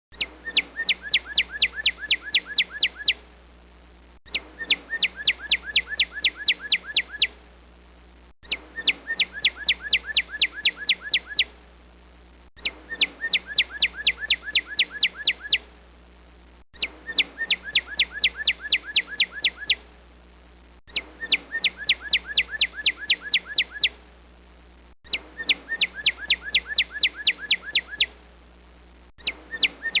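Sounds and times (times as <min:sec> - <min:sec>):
songbird ringtone: 0:00.2 - 0:03.2, 0:04.3 - 0:07.3, 0:08.5 - 0:11.5, 0:12.6 - 0:15.6, 0:16.8 - 0:19.8, 0:20.9 - 0:23.9, 0:25.1 - 0:28.1, 0:29.2 - 0:30.0.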